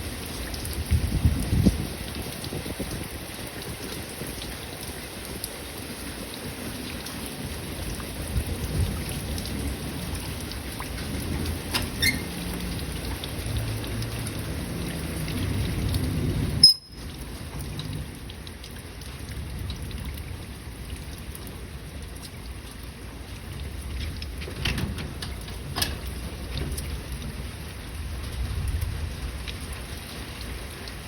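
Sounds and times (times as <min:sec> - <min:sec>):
heavy rain: 0:00.0 - 0:31.0
thunder rumbling: 0:07.4 - 0:18.3, 0:23.6 - 0:30.0.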